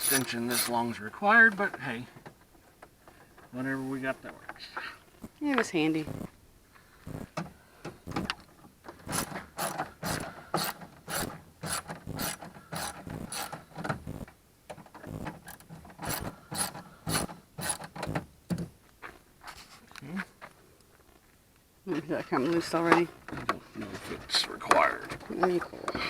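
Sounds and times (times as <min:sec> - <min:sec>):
hand ratchet clicking: 0:09.0 - 0:14.3, 0:15.0 - 0:18.2.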